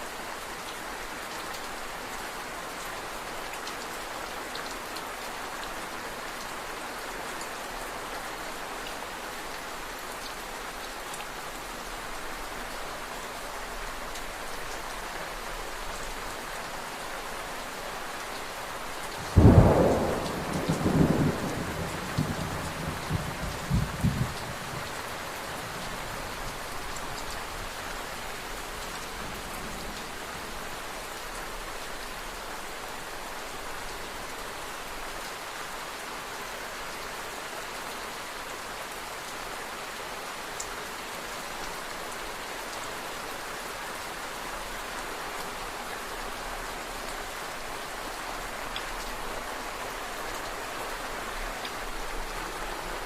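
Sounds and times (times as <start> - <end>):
steady rain: 0.0 - 53.0
thunderclap rumbling: 19.3 - 24.8.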